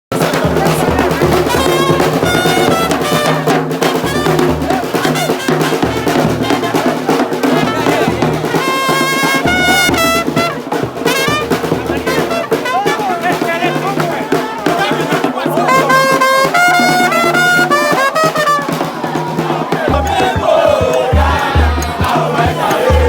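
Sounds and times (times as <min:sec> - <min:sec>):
brass horn lines: 0:00.1 - 0:23.0
drums: 0:00.1 - 0:23.0
repeating bass line: 0:19.9 - 0:23.0.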